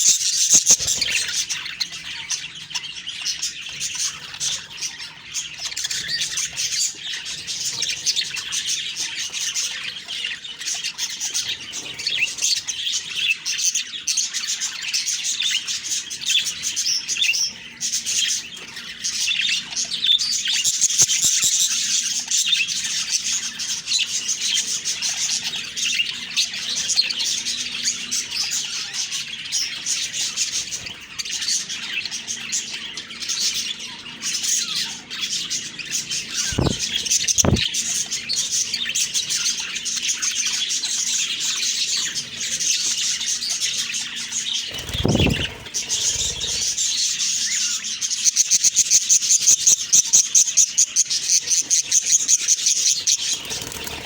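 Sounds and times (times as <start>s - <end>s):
budgie squawks: 0.0s - 1.2s, 36.4s - 37.7s
budgies chirping and warbling: 0.0s - 54.0s.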